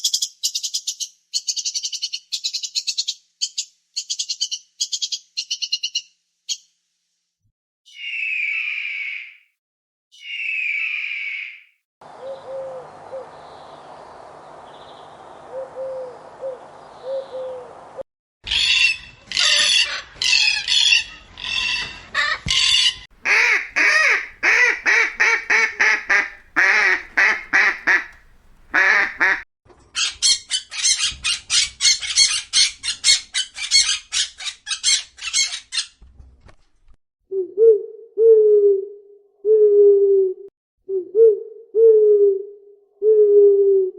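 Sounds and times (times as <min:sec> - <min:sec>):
owl hooting: 0:10.2 - 0:13.3, 0:15.5 - 0:17.7, 0:23.2 - 0:29.4
bird calls: 0:10.2 - 0:17.8, 0:22.6 - 0:29.4.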